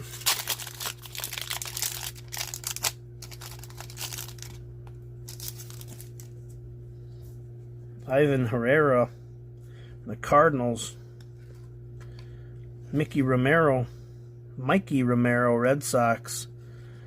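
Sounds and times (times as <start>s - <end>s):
plastic wrapper crinkling: 0.0s - 6.4s
steady low hum: 0.0s - 17.0s.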